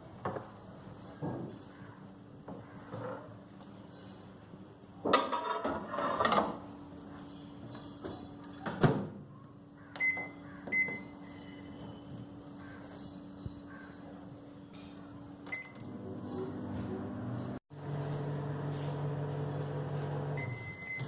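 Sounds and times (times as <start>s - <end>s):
microwave humming: 9.2s - 13.6s, 14.3s - 21.0s
keypad beeps: 10.0s - 12.6s, 15.5s - 15.8s.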